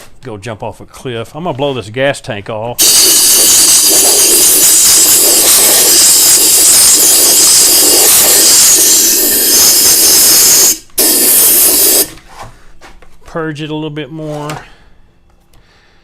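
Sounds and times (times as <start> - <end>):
compressed air hissing: 2.8 - 12.2.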